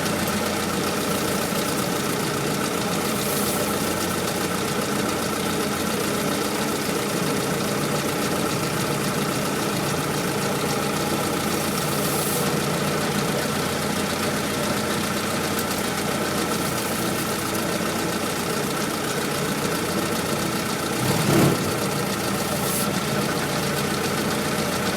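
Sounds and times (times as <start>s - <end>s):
engine idling: 0.0s - 24.9s
low engine surge: 20.9s - 23.9s.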